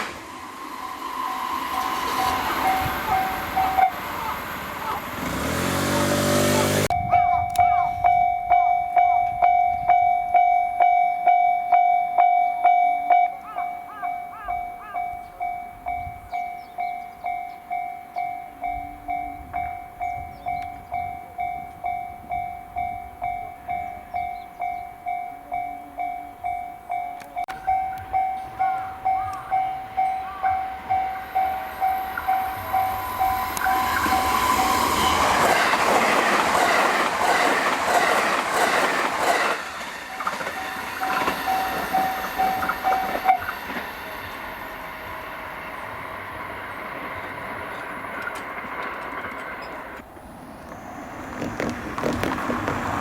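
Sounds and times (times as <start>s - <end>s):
level-crossing warning bell: 0.6s - 50.0s
train wheels clattering on rails: 27.4s - 44.4s, 46.9s - 53.0s.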